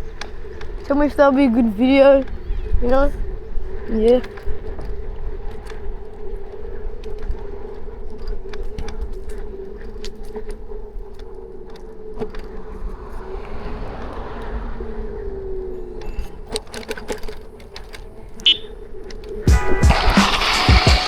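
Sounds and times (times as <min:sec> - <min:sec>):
scooter clicks and rattles: 0:00.0 - 0:13.1, 0:15.9 - 0:21.0
wind rumble on microphone: 0:00.0 - 0:19.5
electric scooter motor whine: 0:00.0 - 0:21.0.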